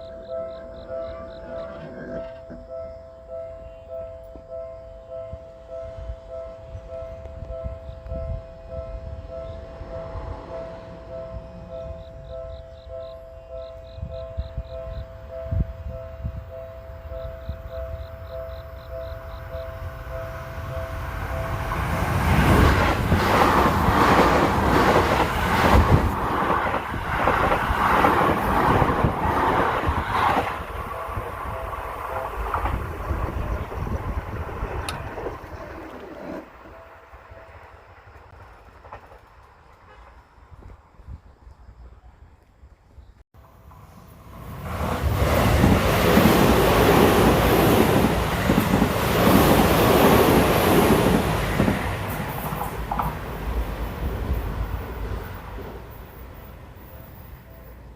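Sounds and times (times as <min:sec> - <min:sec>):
train wheels rumbling on rails: 0:13.7 - 0:41.2, 0:43.5 - 0:57.8.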